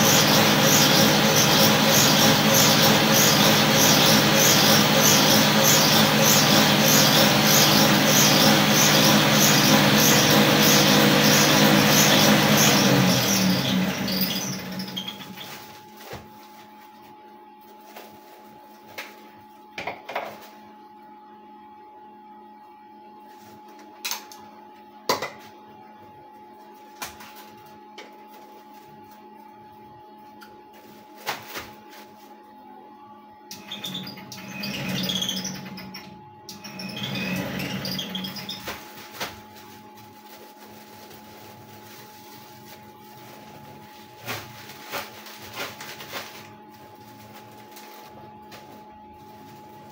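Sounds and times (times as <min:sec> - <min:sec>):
spinner motor humming: 0:00.0 - 0:15.4
cotton candy machine whirr: 0:00.0 - 0:21.4, 0:23.2 - 0:49.9.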